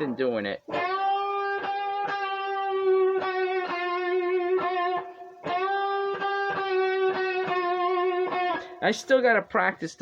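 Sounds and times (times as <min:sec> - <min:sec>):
electric guitar blues lick: 0:00.0 - 0:09.0.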